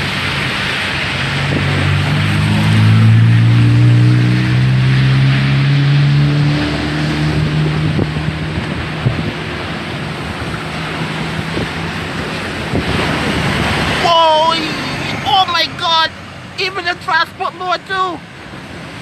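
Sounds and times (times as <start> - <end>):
heavy surf: 0.0 - 19.0
hurricane wind: 0.0 - 19.0
vehicle driving past: 0.3 - 15.5.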